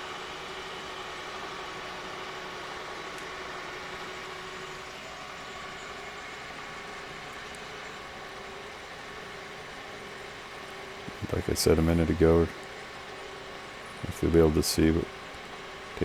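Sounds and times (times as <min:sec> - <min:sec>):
milling machine humming and whining: 0:00.0 - 0:16.0.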